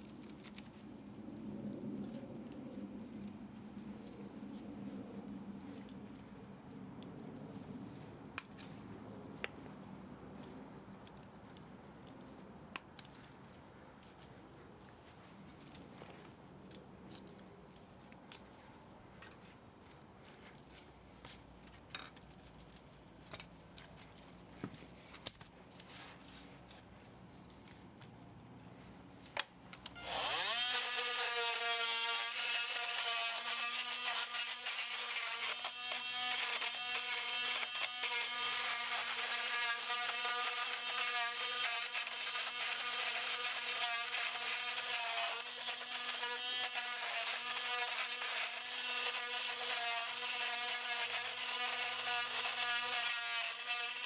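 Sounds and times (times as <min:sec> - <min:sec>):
power tool whine: 0:30.0 - 0:54.0.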